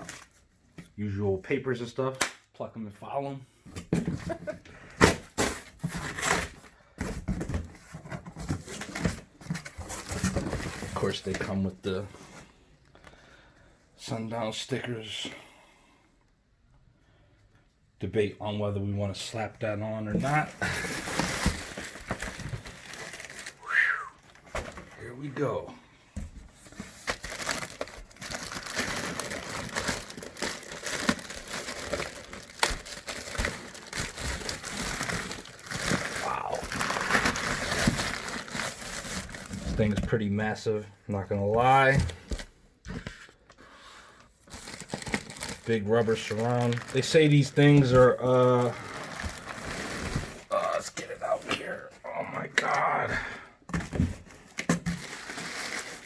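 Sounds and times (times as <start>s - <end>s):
paper and cardboard rustling: 3.9s - 12.4s, 20.1s - 23.6s, 26.2s - 40.2s, 44.4s - 50.8s, 53.7s - 56.0s
packaging crinkling: 20.6s - 24.8s, 26.6s - 39.9s, 44.4s - 50.9s, 54.9s - 56.0s.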